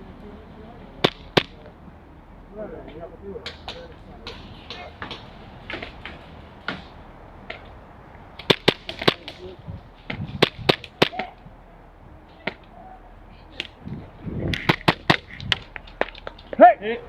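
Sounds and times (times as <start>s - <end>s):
airsoft guns firing: 1.0s - 1.7s, 8.4s - 9.6s.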